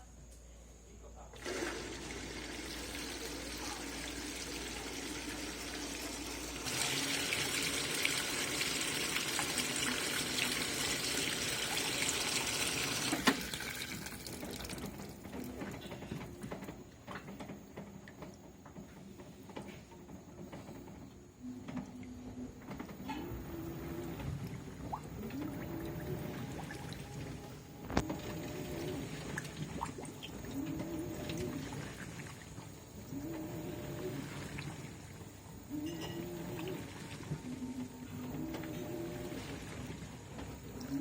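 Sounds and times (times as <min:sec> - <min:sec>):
water rushing into washing machine: 0:01.4 - 0:41.0
washing machine click: 0:12.6 - 0:13.6.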